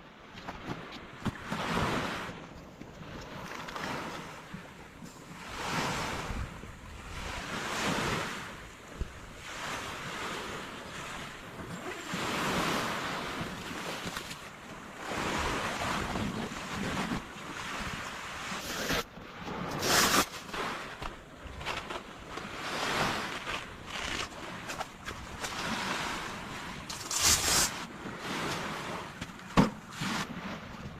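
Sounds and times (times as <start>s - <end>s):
sea waves washing onto shore: 3.2s - 21.3s.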